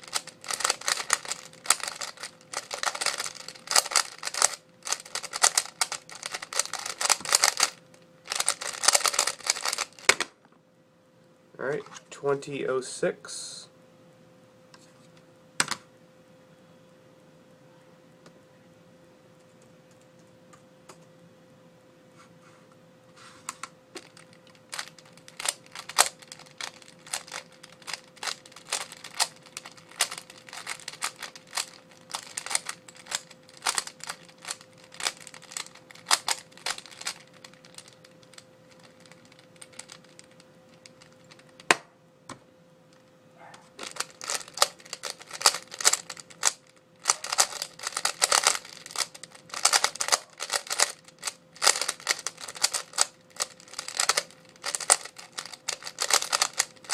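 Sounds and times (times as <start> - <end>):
speed cube plastic clicks: 0.0 - 10.2, 24.0 - 41.7, 43.8 - 56.9
faint steady hum: 0.0 - 56.9.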